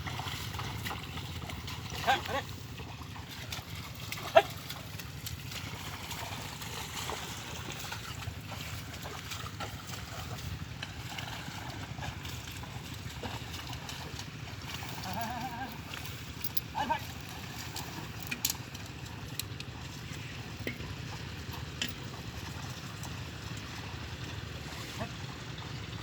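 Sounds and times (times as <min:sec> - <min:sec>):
sloshing through muddy water: 0:00.0 - 0:26.0.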